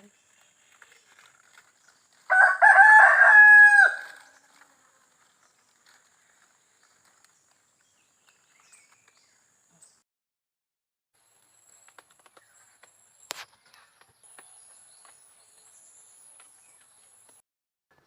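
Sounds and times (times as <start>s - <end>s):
rooster crowing: 2.3s - 4.4s.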